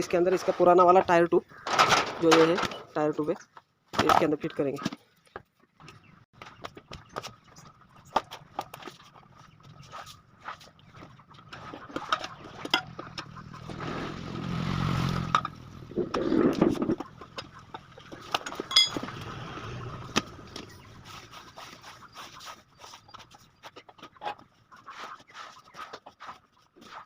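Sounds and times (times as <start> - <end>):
rubber scraping against rim: 11.6 - 17.3
metallic clinks and knocks: 18.4 - 19.1.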